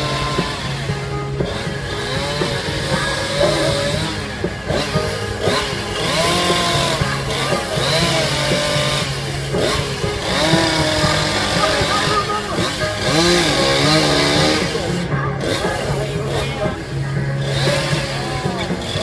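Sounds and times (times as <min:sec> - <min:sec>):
chainsaw carving wood: 0:00.0 - 0:19.0.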